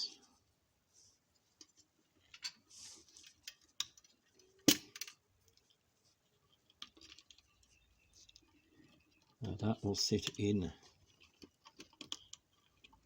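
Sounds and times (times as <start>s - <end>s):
plastic parts clicking and tapping: 10.1s - 13.0s.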